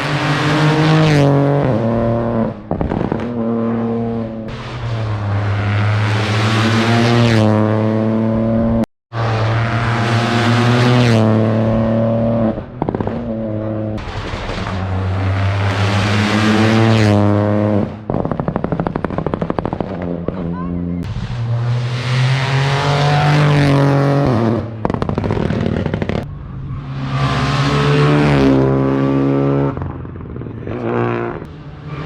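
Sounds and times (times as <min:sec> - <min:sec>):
rally car engine accelerating: 0:00.0 - 0:32.0.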